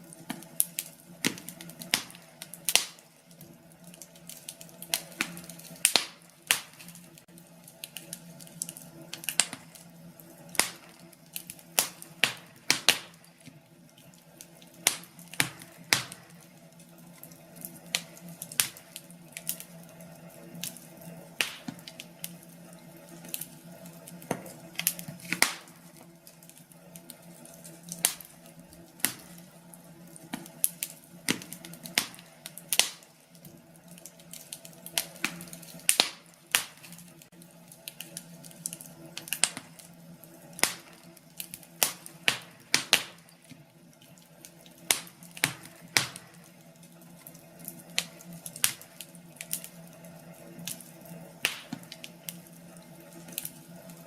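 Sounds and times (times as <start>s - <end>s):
faint steady hum: 0.0s - 54.0s
fireplace fire crackling: 0.0s - 54.0s.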